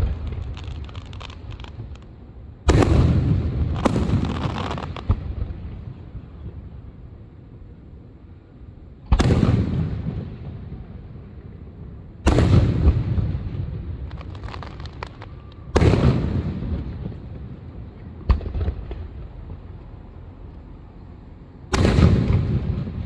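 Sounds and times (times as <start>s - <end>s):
sharp crack: 0.0s - 5.2s, 12.3s - 17.4s, 21.7s - 23.0s
fireworks booming: 0.0s - 7.0s, 9.1s - 20.0s, 21.7s - 23.0s
small crackling pops: 0.2s - 2.1s, 3.8s - 5.1s, 14.0s - 15.6s.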